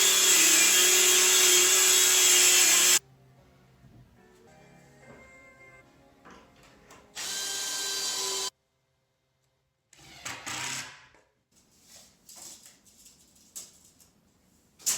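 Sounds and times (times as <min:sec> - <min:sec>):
handheld power tool running: 0:00.0 - 0:03.0.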